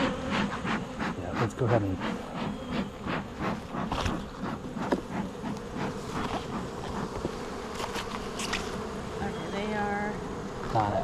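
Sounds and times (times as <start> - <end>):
honeybees buzzing: 0.0 - 11.0.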